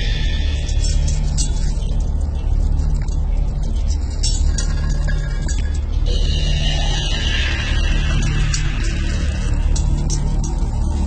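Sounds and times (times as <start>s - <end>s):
deep low drone: 0.0s - 11.0s
hissing grating noise: 6.0s - 10.8s.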